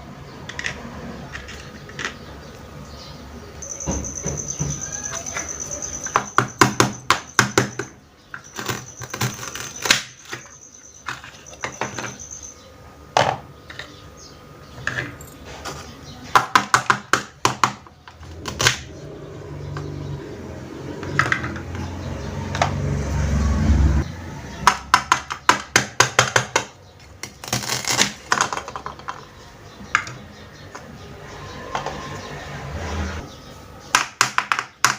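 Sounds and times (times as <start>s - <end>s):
handling noise: 3.6s - 12.5s.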